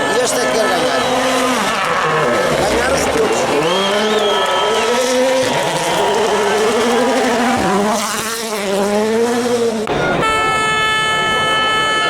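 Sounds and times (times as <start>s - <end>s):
plastic horn buzzing note: 10.1s - 12.0s.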